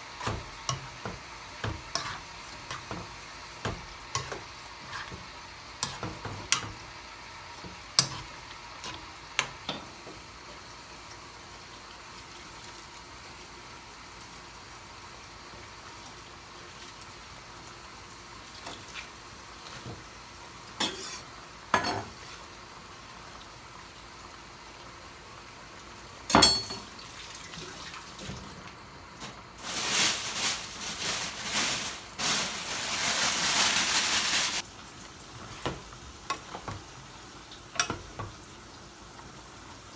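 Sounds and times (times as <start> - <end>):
faint steady sizzle: 0.0 - 39.9
loud frying sizzle: 0.0 - 39.9
utensils knocking against pots: 0.2 - 5.2, 5.8 - 6.8, 26.3 - 26.9.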